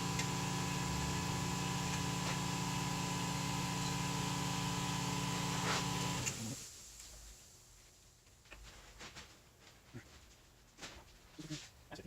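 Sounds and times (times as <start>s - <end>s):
electric motor humming: 0.0s - 6.6s.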